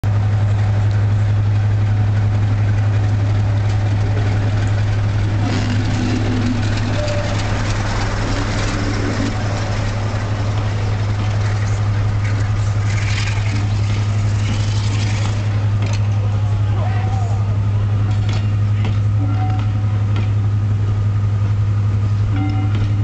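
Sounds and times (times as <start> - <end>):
diesel locomotive engine idling: 0.0 - 23.0.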